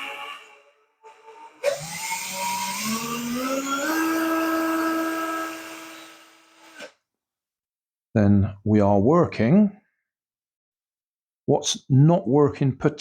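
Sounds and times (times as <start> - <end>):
electric drill whining: 0.0 - 7.0.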